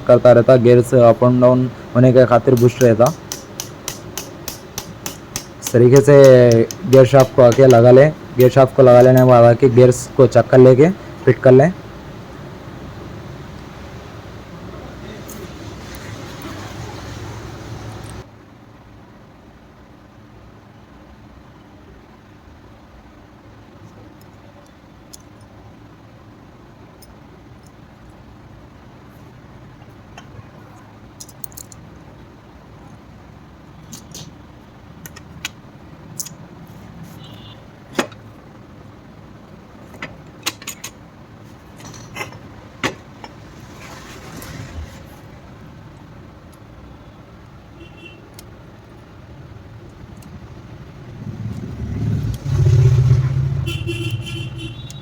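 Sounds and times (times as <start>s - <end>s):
vehicle engine rumble: 0.0s - 55.0s
metal parts clicking and clinking: 25.1s - 25.5s, 31.2s - 32.0s, 39.8s - 41.0s.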